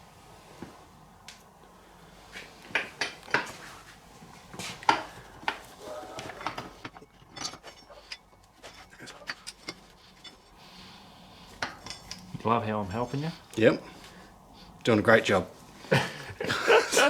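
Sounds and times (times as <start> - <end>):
metallic clinks and knocks: 4.8 - 10.6, 11.5 - 12.4.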